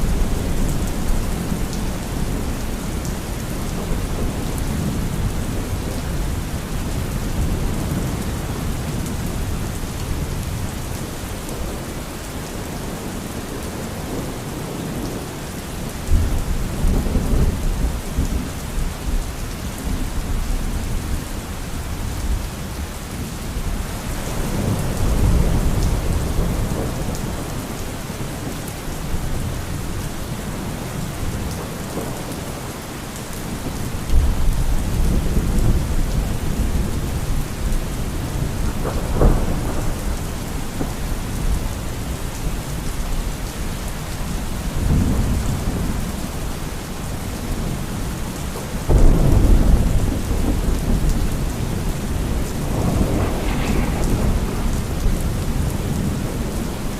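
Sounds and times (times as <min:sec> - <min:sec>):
steady rain: 0:00.0 - 0:56.9
rolling thunder: 0:24.2 - 0:27.9, 0:33.5 - 0:43.2, 0:47.2 - 0:56.9.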